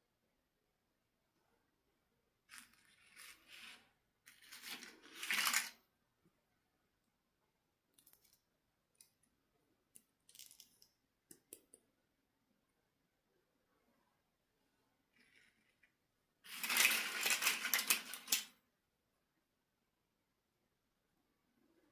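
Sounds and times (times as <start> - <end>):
packaging rustling and crinkling: 4.3 - 5.8, 16.5 - 18.5.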